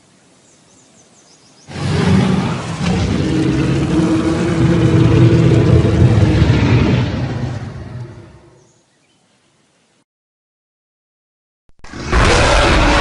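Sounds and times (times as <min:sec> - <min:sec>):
deep dinosaur roar: 0:01.7 - 0:08.6, 0:11.9 - 0:13.0.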